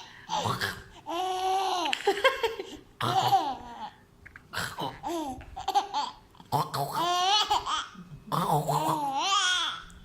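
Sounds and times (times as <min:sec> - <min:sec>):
baby laughing: 0:00.3 - 0:04.0, 0:04.7 - 0:08.0.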